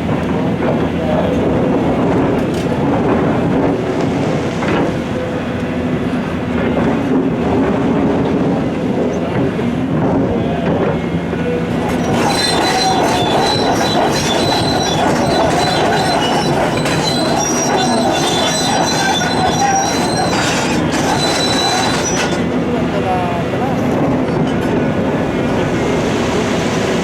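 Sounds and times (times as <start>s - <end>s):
excavator diesel engine running: 0.0s - 27.0s
high-pitched metallic squealing: 11.6s - 24.6s.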